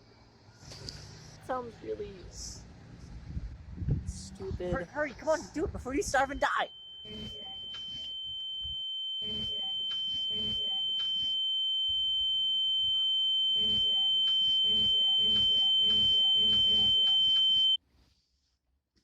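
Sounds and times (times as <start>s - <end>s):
high-pitched electronic tone: 6.6s - 17.8s
faint rhythmic pulsing: 6.7s - 17.8s.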